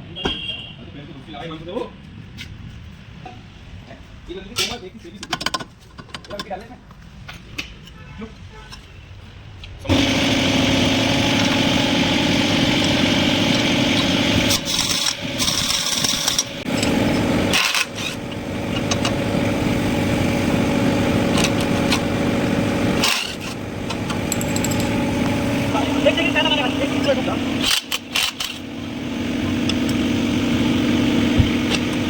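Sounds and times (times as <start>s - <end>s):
engine running: 9.9s - 32.0s.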